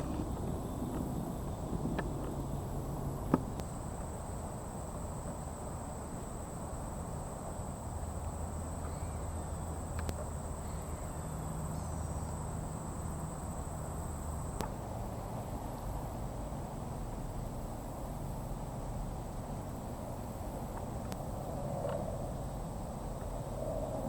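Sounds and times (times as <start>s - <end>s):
insects trilling: 0.0s - 16.2s
low outdoor rumble: 0.0s - 24.0s.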